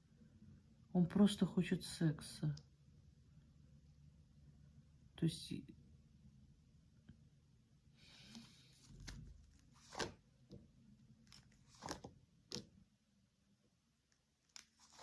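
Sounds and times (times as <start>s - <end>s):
soft rustle: 8.0s - 10.2s, 14.4s - 15.0s.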